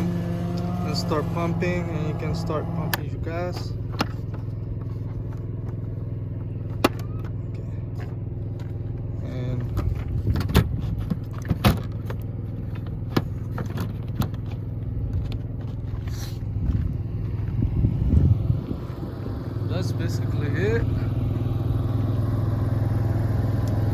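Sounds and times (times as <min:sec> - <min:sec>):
generator running: 0:00.0 - 0:23.9
handling clicks and knocks: 0:02.9 - 0:05.8, 0:06.4 - 0:08.8, 0:09.6 - 0:15.9.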